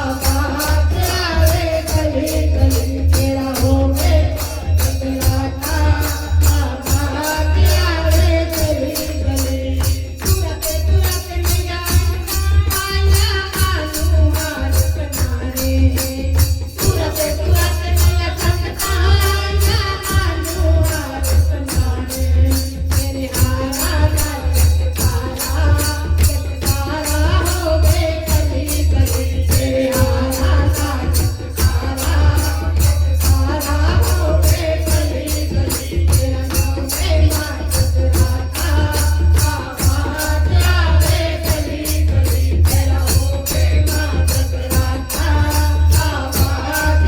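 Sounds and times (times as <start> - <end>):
person singing devotional melody: 0.0 - 47.0
steady drum beat: 0.0 - 47.0
tambourine-like jingles: 0.0 - 47.0.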